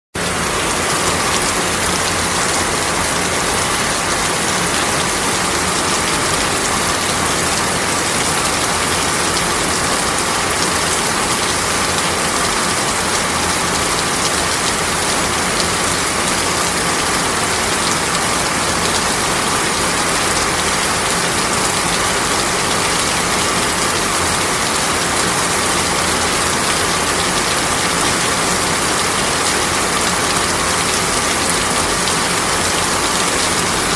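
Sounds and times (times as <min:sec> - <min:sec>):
heavy rain falling: 0:00.2 - 0:33.9.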